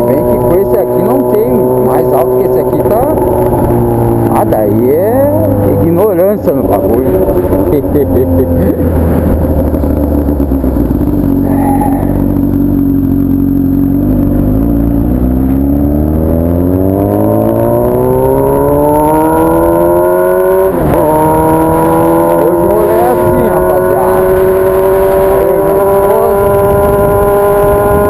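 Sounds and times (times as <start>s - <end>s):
motorcycle engine accelerating: 0.0s - 28.0s.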